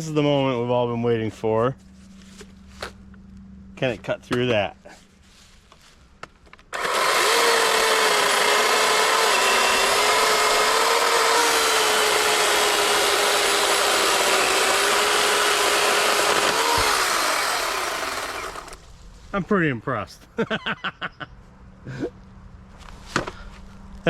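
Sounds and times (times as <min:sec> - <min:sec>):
electric chainsaw cutting wood: 0:06.7 - 0:18.8.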